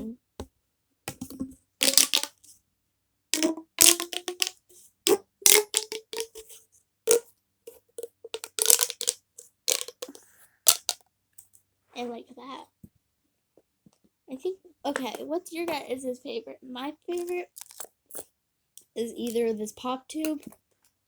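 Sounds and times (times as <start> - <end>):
fidget toy pops and clicks: 1.8 - 2.4, 3.4 - 6.4, 8.4 - 11.0.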